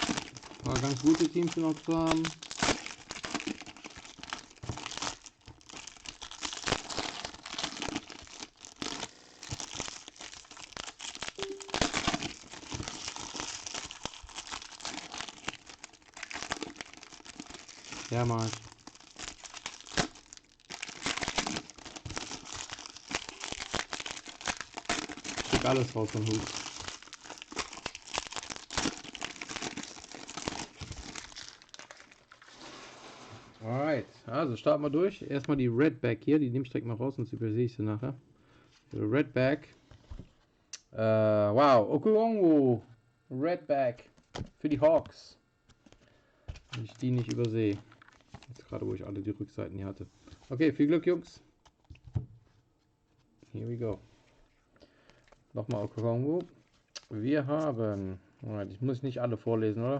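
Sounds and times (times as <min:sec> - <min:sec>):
card pack wrappers crinkling: 0:00.0 - 0:32.7, 0:46.6 - 0:49.0.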